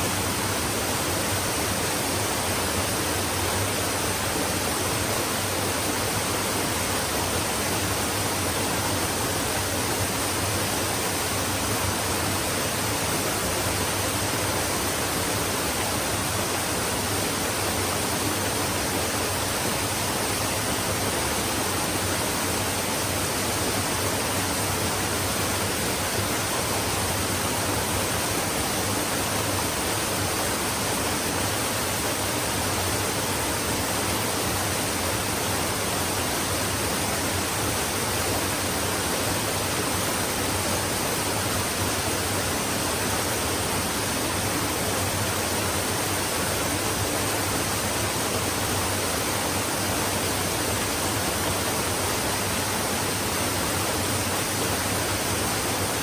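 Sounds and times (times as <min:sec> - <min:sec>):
stream flowing: 0:00.0 - 0:56.0.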